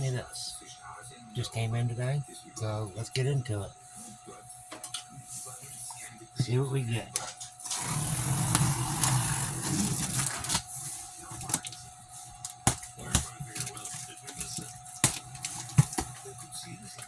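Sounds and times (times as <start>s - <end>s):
cardboard box tearing and scraping: 7.6s - 10.7s
box clicks and knocks: 12.5s - 13.8s, 14.4s - 16.2s.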